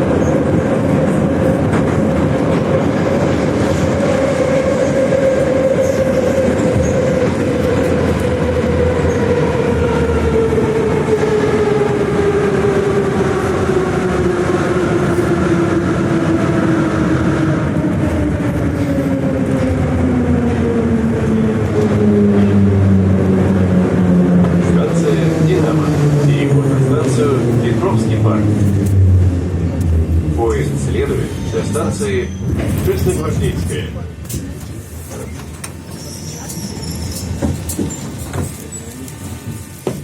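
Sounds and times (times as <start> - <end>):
train wheel and track rattle: 29.8 - 40.0.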